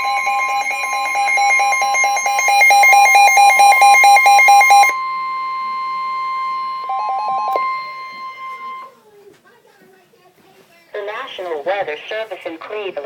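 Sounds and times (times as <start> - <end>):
rapid two-pitch electronic beeping: 0.0 - 5.0
steady warning alarm tone: 0.0 - 9.0.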